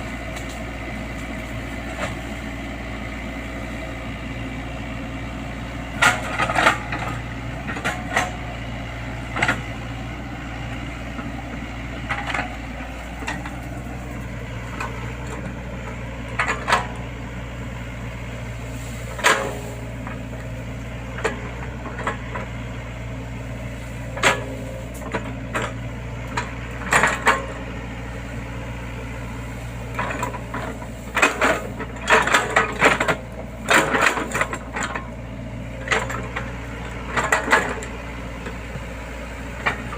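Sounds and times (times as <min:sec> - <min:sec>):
excavator diesel engine running: 0:00.0 - 0:39.9
machine knocks and clanks: 0:05.9 - 0:10.0, 0:12.0 - 0:18.1, 0:19.0 - 0:27.8, 0:29.0 - 0:39.0.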